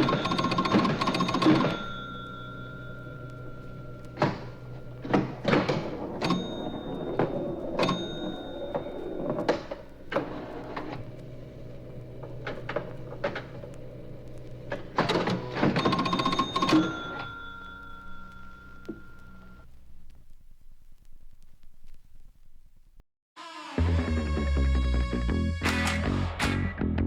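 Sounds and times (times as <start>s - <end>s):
telephone bell ringing: 0.0s - 13.7s, 14.7s - 19.7s
mechanical clicks and knocks: 0.0s - 19.5s.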